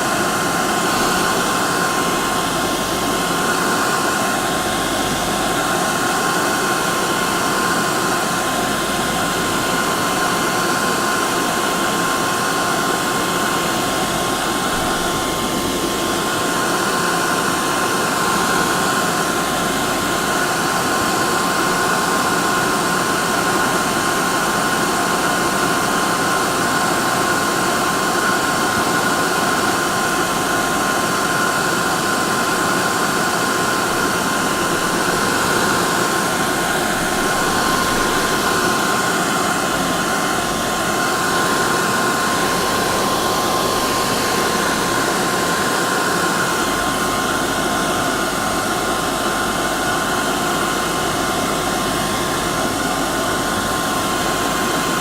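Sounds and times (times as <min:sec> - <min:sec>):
hair dryer running: 0:00.0 - 0:55.0.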